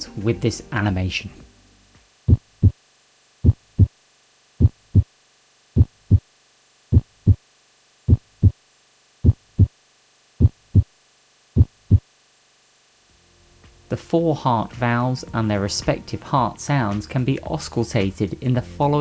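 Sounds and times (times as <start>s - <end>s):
heartbeat lub-dub: 2.3s - 2.8s, 3.4s - 4.0s, 4.6s - 5.2s, 5.8s - 6.3s, 6.9s - 7.5s, 8.1s - 8.6s, 9.2s - 9.8s, 10.4s - 11.0s, 11.6s - 12.1s.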